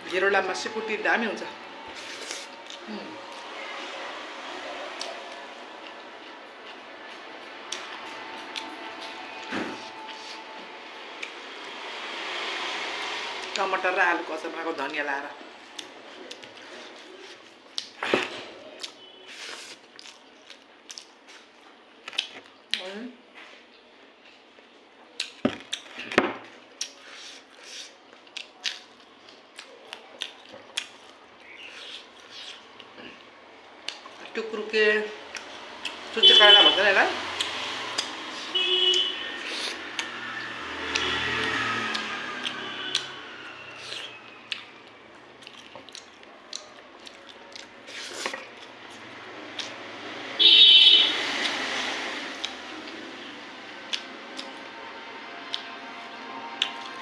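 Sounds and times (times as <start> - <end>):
person chewing food: 4.8 - 11.4, 15.6 - 22.7, 24.2 - 34.3, 39.4 - 43.1, 43.7 - 50.0, 53.9 - 54.6
chewing and wet mouth clicks: 22.0 - 22.8, 27.7 - 32.9, 33.8 - 34.2, 37.4 - 38.2, 40.8 - 43.1, 43.8 - 49.8, 53.9 - 54.6, 55.4 - 55.8.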